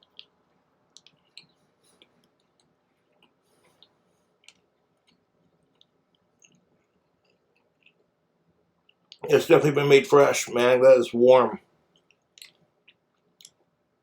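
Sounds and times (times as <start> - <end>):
mouth clicks and chewing: 0.0 - 8.1, 11.9 - 13.6.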